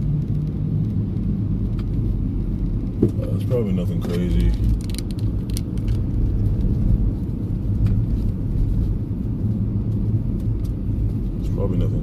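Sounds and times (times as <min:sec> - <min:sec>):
car road noise rumble: 0:00.0 - 0:12.0.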